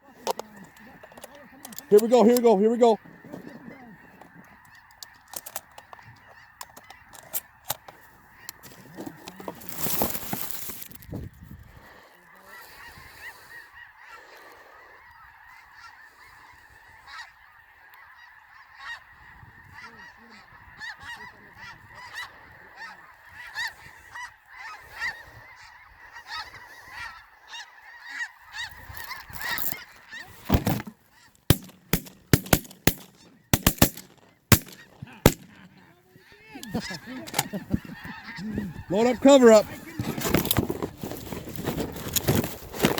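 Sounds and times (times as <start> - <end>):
geese honking: 0.0 - 10.5, 11.8 - 42.9
shotgun shots: 31.5 - 35.7.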